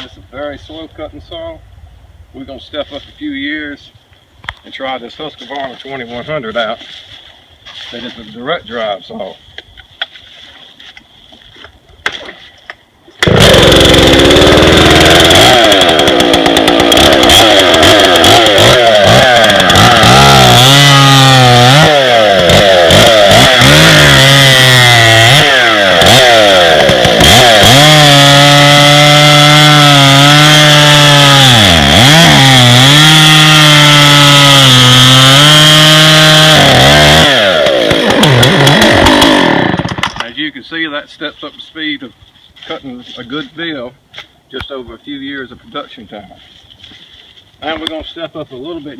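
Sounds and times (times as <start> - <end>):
chainsaw cutting log: 13.2 - 40.3.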